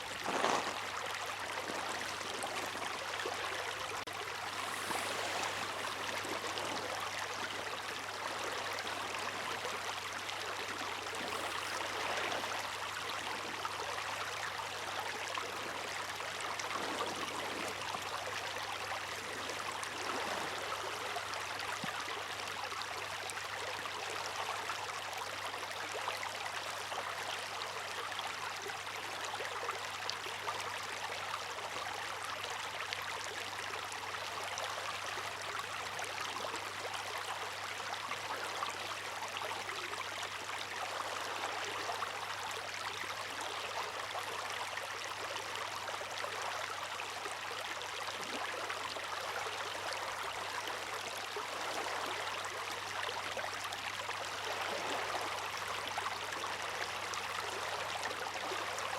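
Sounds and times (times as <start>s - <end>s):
seawater rushing and splashing: 0.0s - 13.4s.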